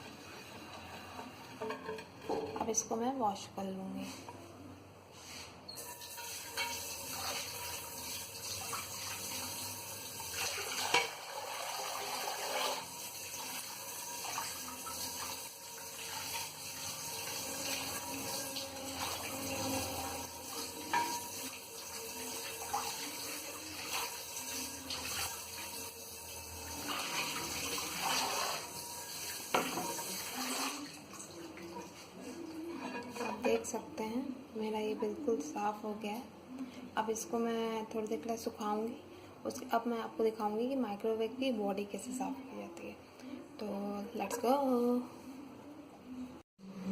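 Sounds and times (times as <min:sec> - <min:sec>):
tap water running into sink: 0:05.9 - 0:31.6.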